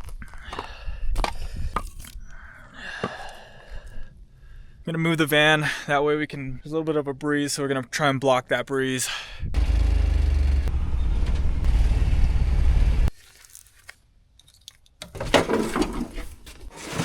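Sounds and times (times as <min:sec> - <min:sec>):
van engine rumbling: 0:09.6 - 0:13.1
clattering and rustling: 0:13.2 - 0:17.0.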